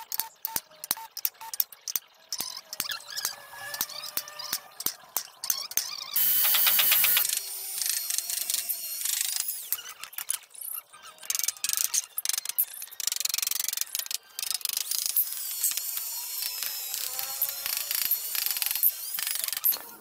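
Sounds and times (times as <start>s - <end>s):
tool clicking and ratcheting: 0.8s - 10.4s, 11.3s - 19.8s
hissing fast ticks: 6.2s - 7.3s.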